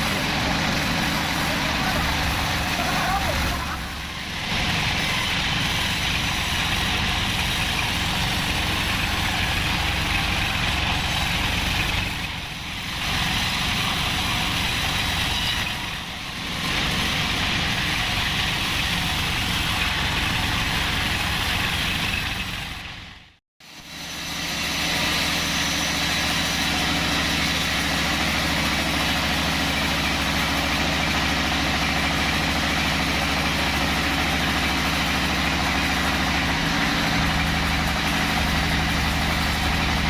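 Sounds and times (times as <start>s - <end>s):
saw blade hissing through log: 0.0s - 19.6s
bandsaw engine drone: 0.0s - 23.1s, 23.7s - 40.0s.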